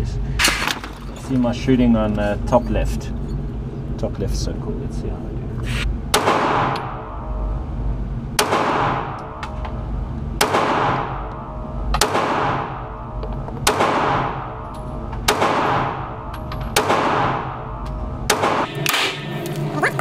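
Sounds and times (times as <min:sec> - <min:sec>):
pistol shots with echo: 0:06.1 - 0:07.3, 0:08.4 - 0:09.4, 0:10.4 - 0:11.3, 0:12.0 - 0:19.2.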